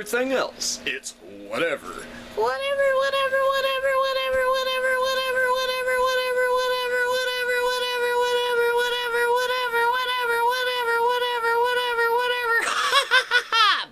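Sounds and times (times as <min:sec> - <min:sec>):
person singing a long high note: 0:02.4 - 0:12.6.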